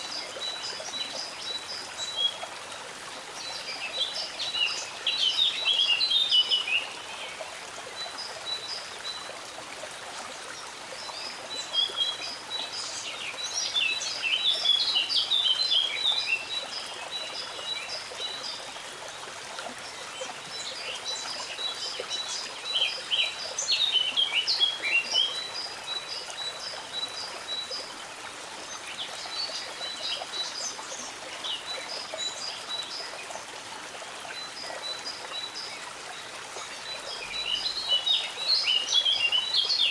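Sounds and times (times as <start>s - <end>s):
stream water running: 0.0s - 39.9s
songbirds singing: 10.6s - 39.9s.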